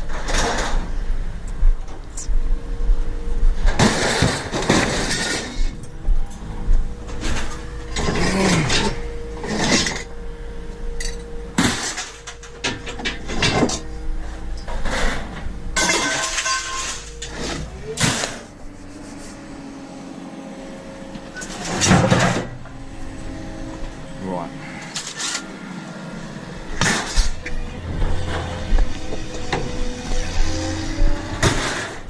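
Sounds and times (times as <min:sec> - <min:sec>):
metal clanks and knocks: 0:00.0 - 0:01.0, 0:03.5 - 0:10.2, 0:10.9 - 0:18.6, 0:21.1 - 0:24.2, 0:26.7 - 0:32.0
glass breaking: 0:15.8 - 0:17.1.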